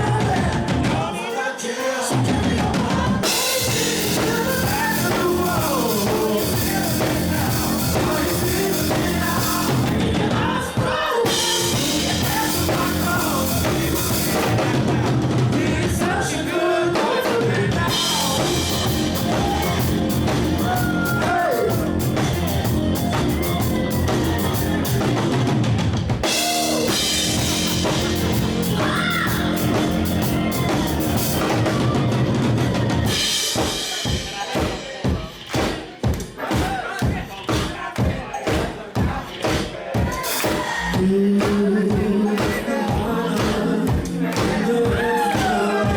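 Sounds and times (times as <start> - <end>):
live band music with singer: 0.0 - 45.9.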